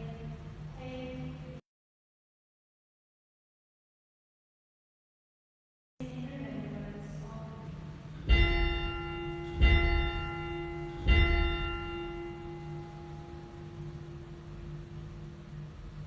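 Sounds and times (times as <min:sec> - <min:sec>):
bell ringing: 0:08.3 - 0:15.5.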